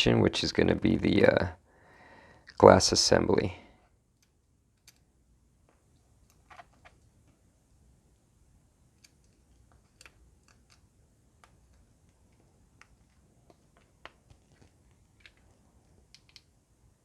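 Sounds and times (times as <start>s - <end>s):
faint clicks from small parts: 8.9s - 16.6s.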